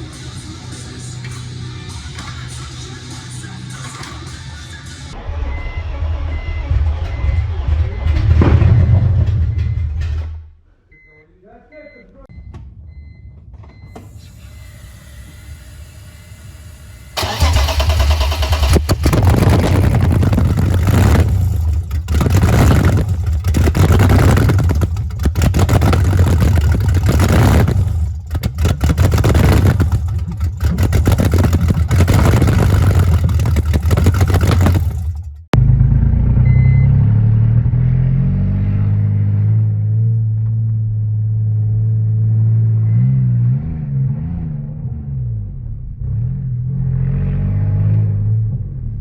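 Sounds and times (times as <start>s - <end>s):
low steady engine rumble: 0.0s - 10.2s, 12.3s - 38.3s
car engine revving: 14.0s - 49.0s.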